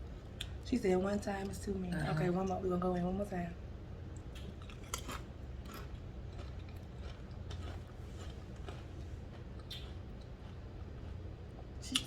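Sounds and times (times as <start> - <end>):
steady low hum: 0.0 - 12.0
clicks of people eating: 4.1 - 12.0.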